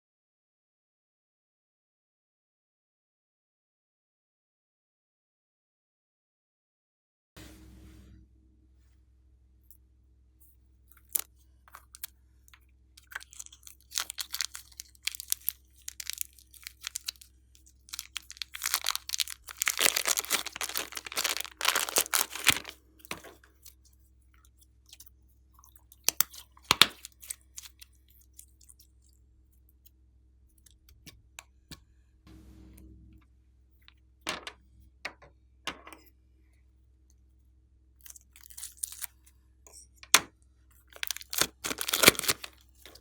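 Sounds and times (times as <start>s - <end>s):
slime crackling and popping: 13.0s - 23.3s, 41.0s - 43.0s.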